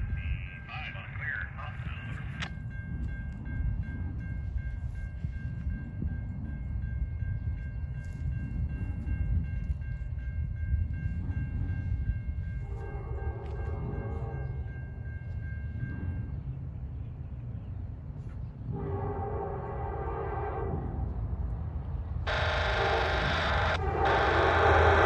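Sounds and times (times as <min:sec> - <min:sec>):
train passing rumble: 0:00.0 - 0:25.0
high whine: 0:22.3 - 0:25.0
horn chord: 0:22.3 - 0:25.0.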